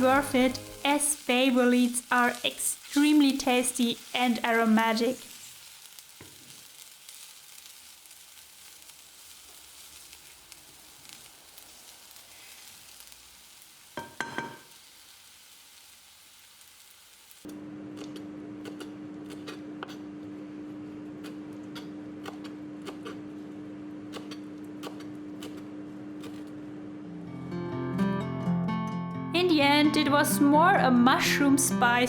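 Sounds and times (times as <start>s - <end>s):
mushrooms sizzling in a pan: 0.0s - 17.5s.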